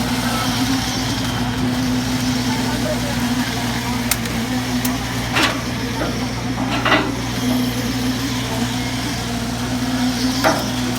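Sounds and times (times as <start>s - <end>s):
heavy diesel engine running: 0.0s - 10.9s.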